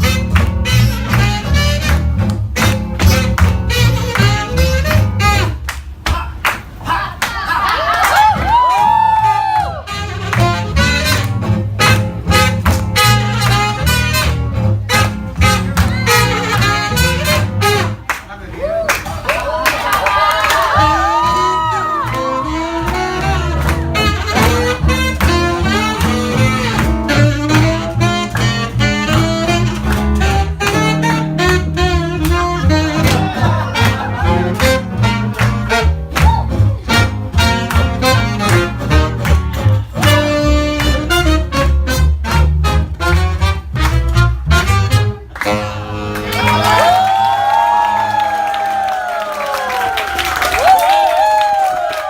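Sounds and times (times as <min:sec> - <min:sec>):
plucked bass: 0:00.0 - 0:05.6, 0:10.1 - 0:18.0, 0:20.8 - 0:46.7
live swing band playing: 0:00.0 - 0:06.0, 0:08.2 - 0:18.3, 0:20.6 - 0:47.5
strummed rhythm guitar: 0:22.9 - 0:45.8.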